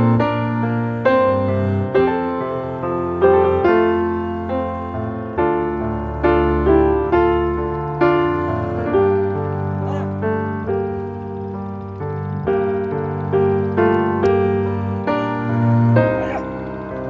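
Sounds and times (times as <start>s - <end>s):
electric piano melody: 0.0s - 17.0s.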